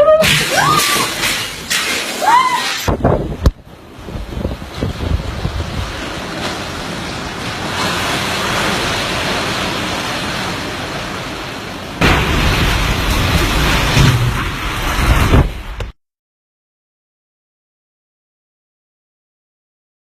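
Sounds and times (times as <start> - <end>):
strong wind buffeting microphone: 2.8 - 10.7.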